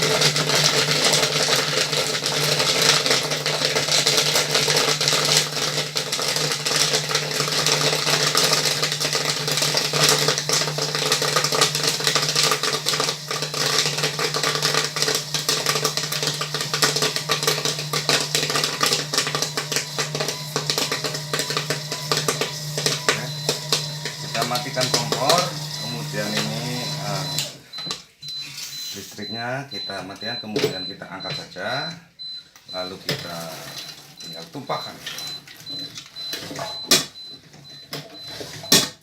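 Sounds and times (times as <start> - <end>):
popcorn popping: 0.0 - 28.0
electric motor hum: 16.9 - 27.5.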